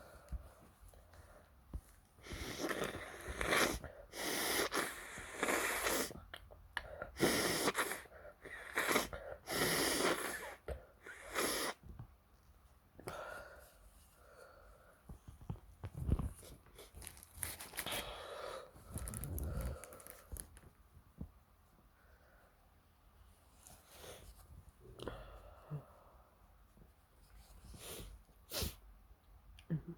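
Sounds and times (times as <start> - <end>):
wheezy breathing: 2.2 - 6.2.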